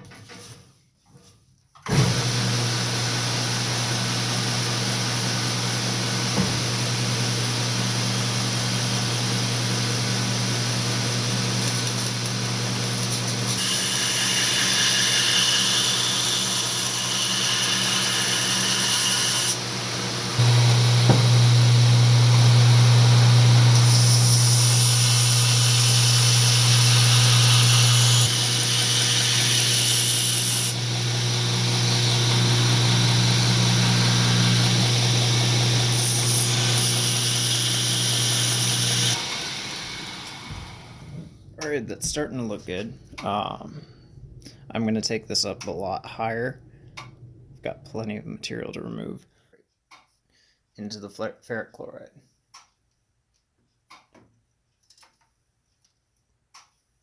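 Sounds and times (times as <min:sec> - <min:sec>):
power grinder running: 0:02.1 - 0:41.2.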